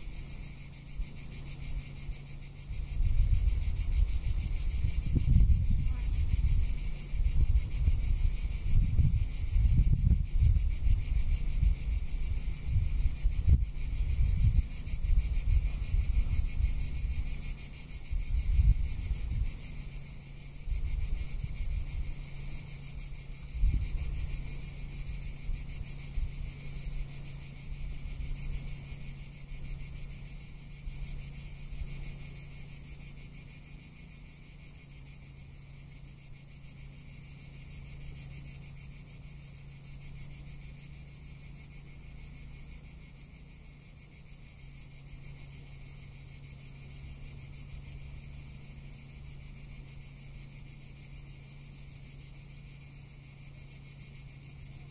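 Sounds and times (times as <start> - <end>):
cicadas buzzing: 0.0 - 54.9
wind rumbling on microphone: 0.2 - 28.4.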